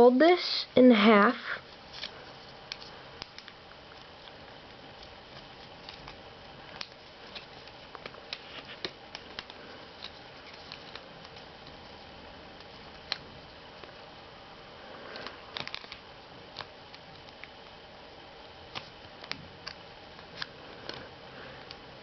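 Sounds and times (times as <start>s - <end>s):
faint steady hum: 0.0s - 22.0s
paper being folded and creased: 1.9s - 3.5s, 5.0s - 11.5s
paper rustling: 5.0s - 11.5s.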